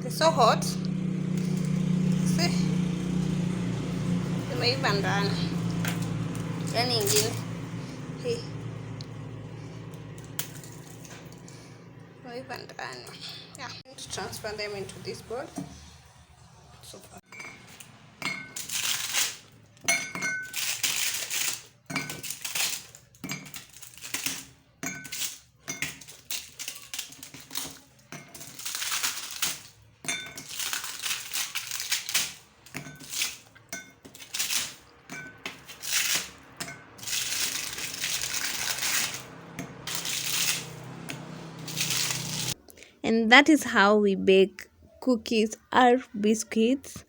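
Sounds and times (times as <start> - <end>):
cookies clattering on tray and bowl: 17.2 - 42.6.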